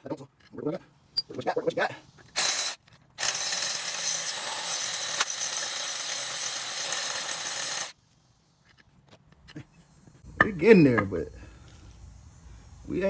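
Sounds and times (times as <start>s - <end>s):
power tool grinding metal: 2.4s - 7.9s.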